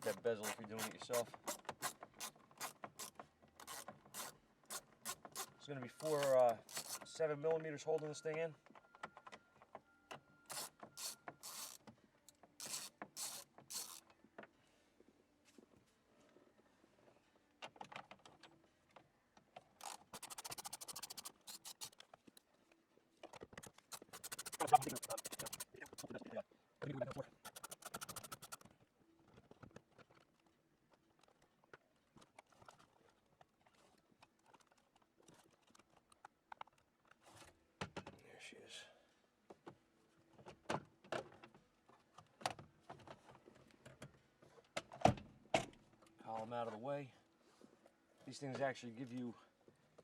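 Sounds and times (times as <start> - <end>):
plastic parts clicking and knocking: 0.0 - 7.1, 17.6 - 22.5, 23.2 - 26.2, 27.3 - 37.2
ratchet wrench clicking: 3.6 - 4.3, 6.2 - 7.0, 10.5 - 11.8, 12.6 - 14.0, 19.8 - 22.0, 23.9 - 26.1, 27.5 - 28.6.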